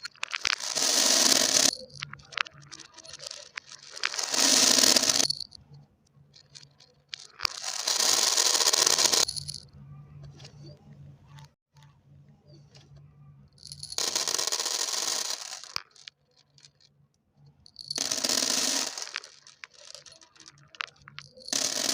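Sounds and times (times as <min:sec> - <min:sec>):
marbles clicking together: 0:00.0 - 0:05.6, 0:06.4 - 0:09.6, 0:13.6 - 0:16.9, 0:17.7 - 0:21.9
marbles rolling on track: 0:00.0 - 0:05.6, 0:06.4 - 0:09.6, 0:13.6 - 0:16.9, 0:17.7 - 0:21.9.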